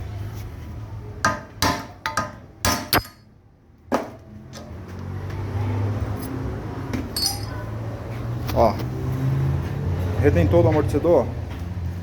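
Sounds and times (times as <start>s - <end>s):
sharp metallic knocks and clinks: 1.6s - 3.3s, 7.1s - 7.7s.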